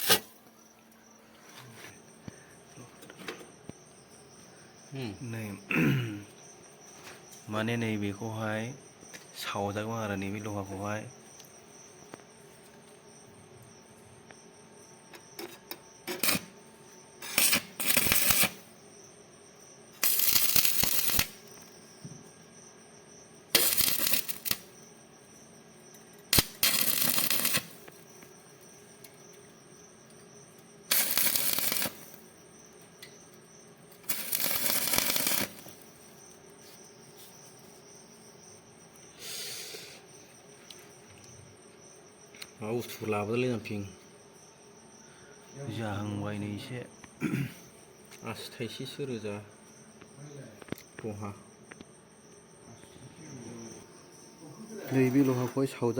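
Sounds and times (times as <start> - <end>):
arc welding crackle: 0.0 - 0.4, 16.0 - 16.6, 17.2 - 18.7, 19.9 - 21.7, 23.5 - 24.8, 26.3 - 28.4, 30.9 - 32.4, 33.9 - 36.2
crickets chirping: 0.0 - 55.9.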